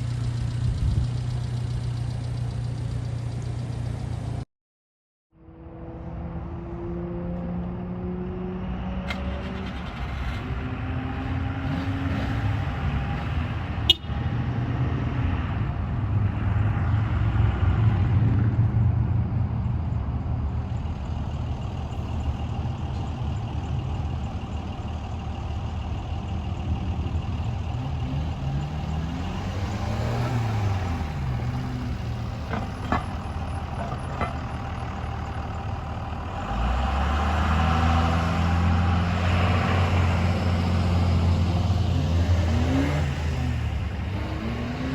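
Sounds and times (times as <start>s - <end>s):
truck engine running: 0.0s - 4.4s, 18.6s - 44.1s.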